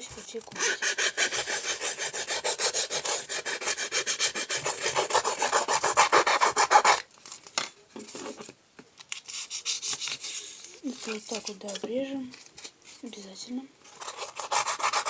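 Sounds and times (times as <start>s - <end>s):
file rasping on foam: 0.5s - 7.0s, 9.3s - 10.4s, 14.0s - 15.0s
faint scrapes: 9.2s - 13.1s.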